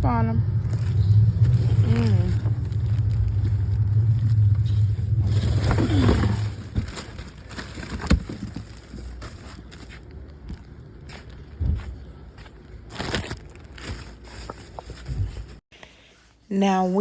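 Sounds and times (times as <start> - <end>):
low engine hum: 0.0 - 7.5
rustling: 0.6 - 15.6.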